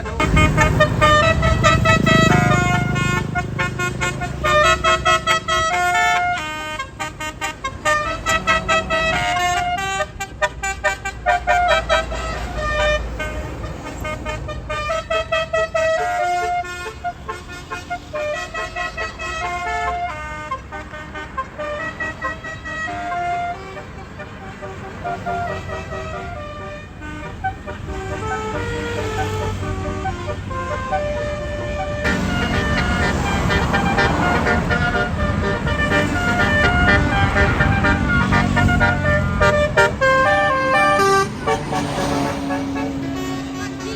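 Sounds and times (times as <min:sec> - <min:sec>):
engine running: 0:00.0 - 0:10.2, 0:26.9 - 0:43.9
multi-tone bus horn tune: 0:00.0 - 0:43.9.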